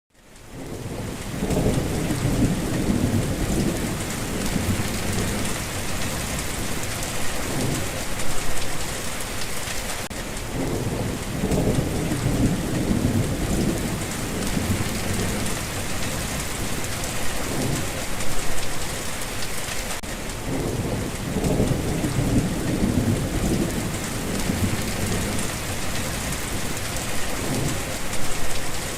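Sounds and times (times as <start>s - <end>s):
steady rain hissing: 0.1s - 28.9s
rolling thunder rumbles: 0.6s - 8.9s, 10.5s - 18.6s, 20.3s - 28.9s.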